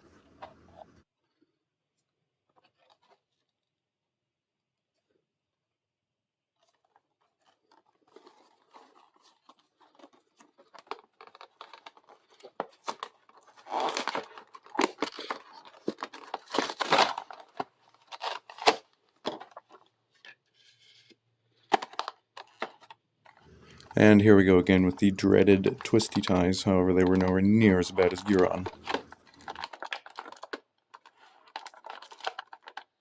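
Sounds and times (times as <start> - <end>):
cardboard and plastic tearing: 6.6 - 23.6, 24.7 - 33.0.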